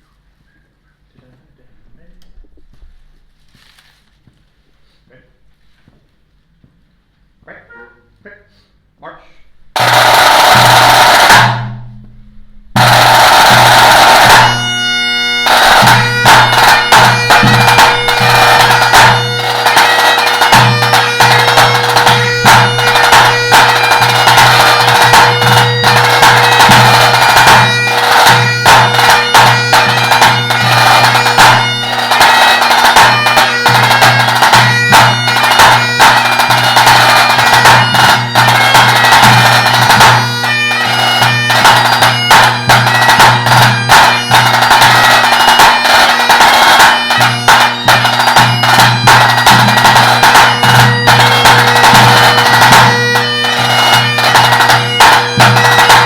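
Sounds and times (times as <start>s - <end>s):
tenor drum beating: 9.6s - 56.0s
bagpipe playing a tune: 12.8s - 56.0s.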